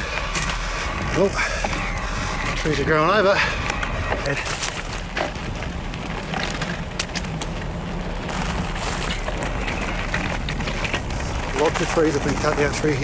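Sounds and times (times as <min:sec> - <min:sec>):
bike tyre rumble on dirt: 0:00.0 - 0:13.0
clicks and rattles over stones: 0:03.6 - 0:13.0.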